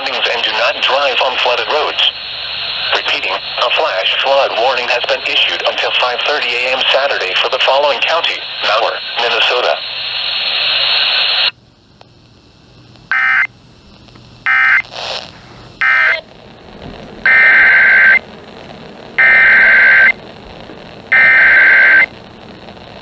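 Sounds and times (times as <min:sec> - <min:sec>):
loud hiss: 0:00.6 - 0:23.0
data bursts: 0:13.1 - 0:13.5, 0:14.4 - 0:15.2, 0:15.8 - 0:16.2, 0:17.2 - 0:18.3, 0:19.2 - 0:20.2, 0:21.1 - 0:22.1.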